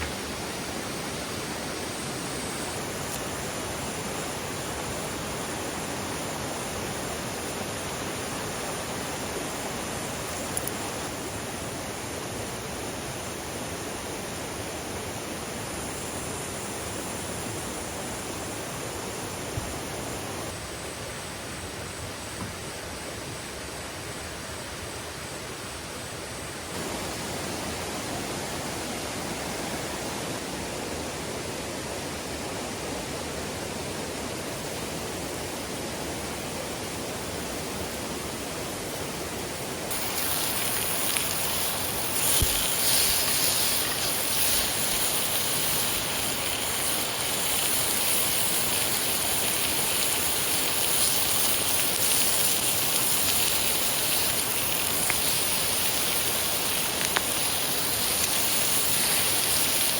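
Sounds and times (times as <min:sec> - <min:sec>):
stream rushing: 0:26.8 - 0:59.9.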